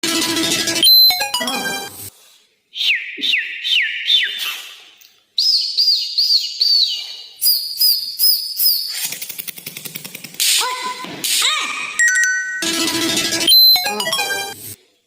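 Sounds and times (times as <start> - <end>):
high chirps sweeping downward: 0.0 - 2.0, 12.0 - 14.6
rapid clicking rattle: 9.0 - 10.4.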